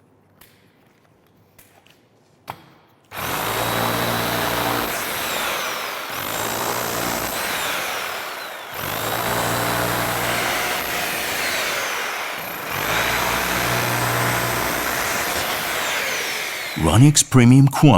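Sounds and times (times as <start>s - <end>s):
rotary hammer drill running: 3.1s - 16.8s.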